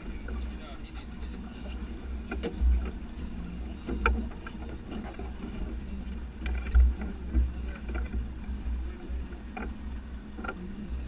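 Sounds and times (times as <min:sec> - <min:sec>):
boat rumbling on water: 0:00.0 - 0:11.0.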